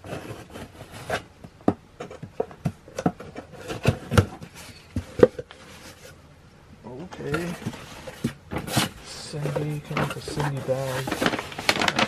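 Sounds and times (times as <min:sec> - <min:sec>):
packaging rustling: 0:07.3 - 0:12.0.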